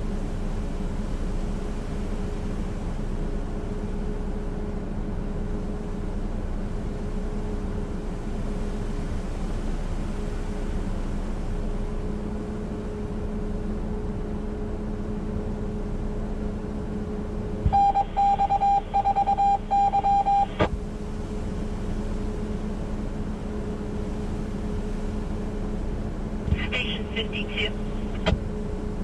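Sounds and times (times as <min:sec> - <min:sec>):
steady hum: 0:00.0 - 0:29.0
high beeping tone: 0:17.7 - 0:20.6
radio receiver hiss: 0:26.5 - 0:28.4.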